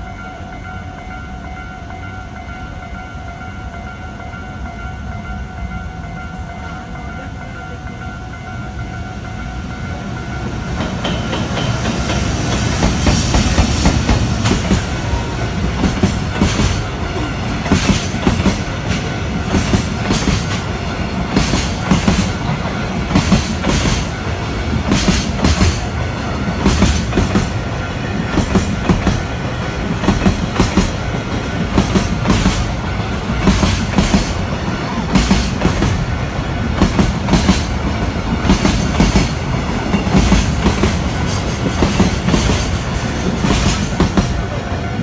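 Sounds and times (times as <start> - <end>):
freight train passing: 0.0 - 45.0
wheels clacking over rail joints: 10.4 - 45.0.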